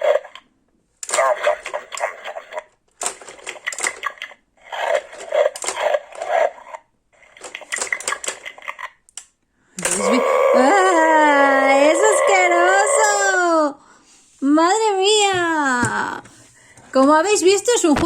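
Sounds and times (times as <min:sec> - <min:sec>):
plastic toy clicking and rattling: 0:01.0 - 0:10.2.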